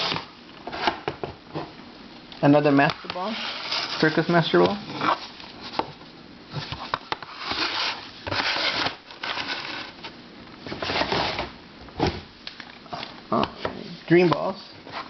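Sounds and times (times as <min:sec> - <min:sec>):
puzzles rustling and scraping: 0:06.6 - 0:11.5.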